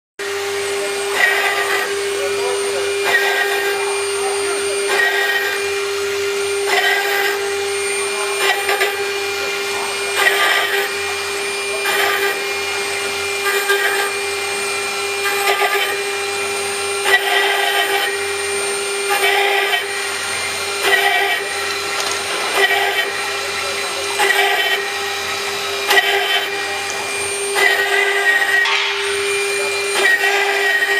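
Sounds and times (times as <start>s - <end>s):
router bit grinding stone: 0.2s - 30.9s
spindle running with steady whine: 0.2s - 30.9s.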